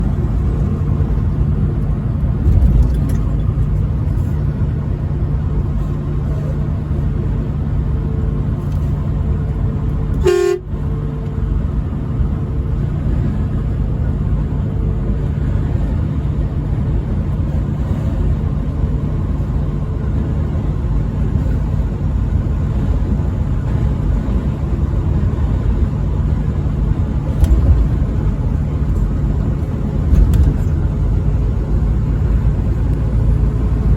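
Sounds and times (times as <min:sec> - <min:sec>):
truck engine and road rumble: 0:00.0 - 0:33.9
truck horn toot: 0:10.1 - 0:10.9.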